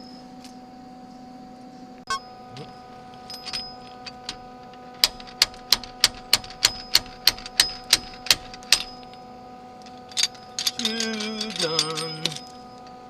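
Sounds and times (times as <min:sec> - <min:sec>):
steady electrical hum: 0:00.0 - 0:13.0
sharp metallic taps: 0:05.0 - 0:09.0.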